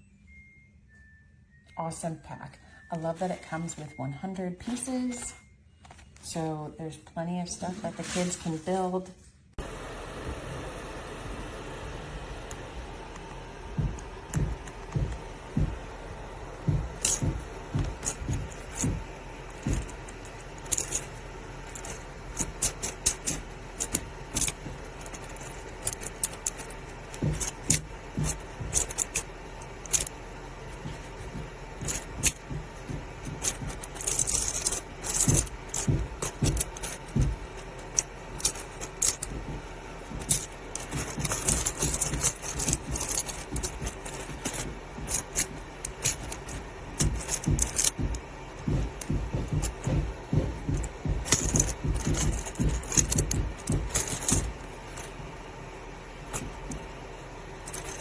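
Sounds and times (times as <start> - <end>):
cubes rattling: 16.8 - 55.2, 57.6 - 58.0.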